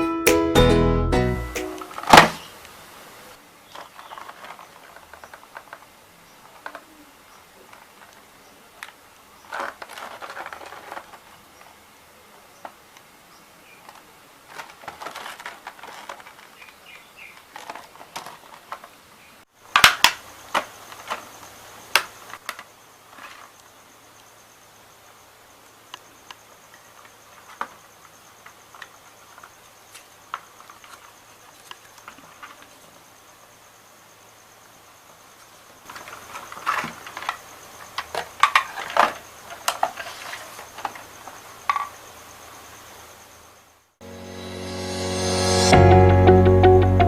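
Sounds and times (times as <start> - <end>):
plastic packaging crinkling: 9.5 - 11.3, 13.9 - 16.7.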